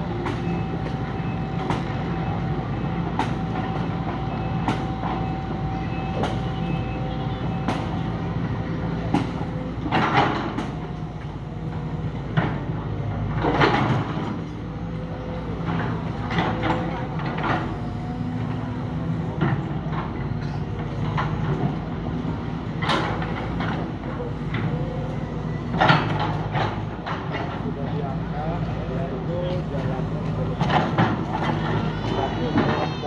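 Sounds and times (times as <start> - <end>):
excavator diesel engine running: 0.0 - 33.0
machine noise bursts: 30.9 - 33.0.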